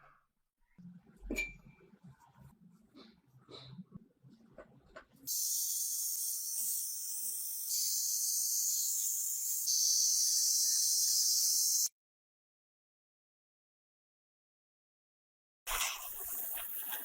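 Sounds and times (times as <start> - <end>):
high-pitched air hiss: 5.3 - 11.9.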